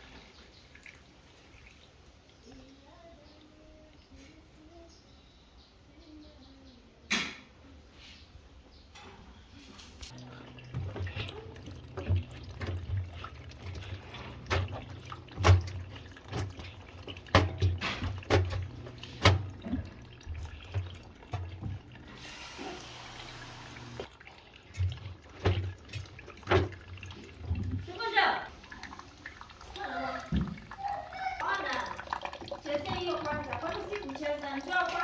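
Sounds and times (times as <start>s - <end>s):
water splashing and dripping: 0.0s - 2.8s, 9.8s - 35.0s
water rushing: 10.1s - 35.0s.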